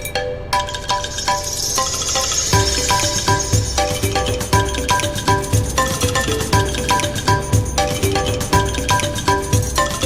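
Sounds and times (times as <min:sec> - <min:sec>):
low thumping beat: 0:02.5 - 0:10.0.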